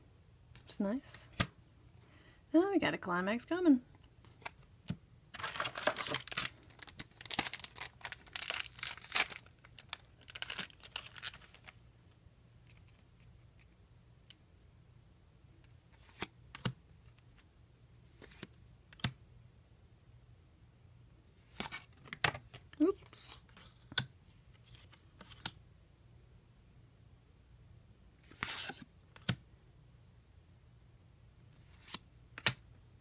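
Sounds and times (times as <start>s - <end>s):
foil wrapper crinkling: 5.4s - 11.8s.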